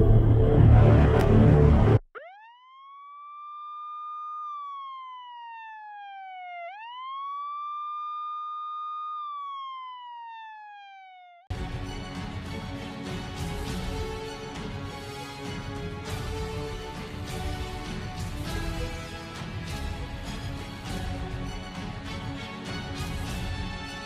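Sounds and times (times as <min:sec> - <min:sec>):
siren wailing: 0:01.8 - 0:11.5.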